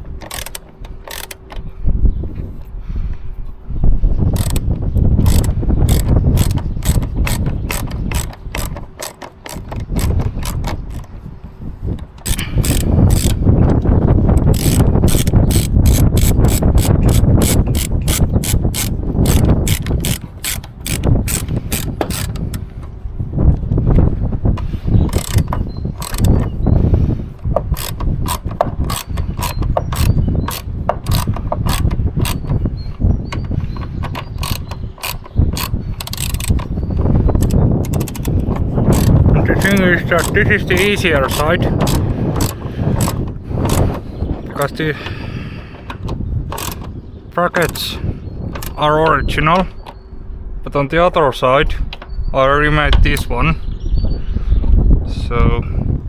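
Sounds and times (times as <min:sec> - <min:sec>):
ratchet wrench clicking: 0:00.0 - 0:01.6, 0:04.3 - 0:11.1, 0:12.2 - 0:22.7, 0:25.0 - 0:26.5, 0:27.4 - 0:32.6, 0:34.2 - 0:36.8, 0:37.4 - 0:44.0, 0:46.5 - 0:46.9, 0:47.6 - 0:47.9.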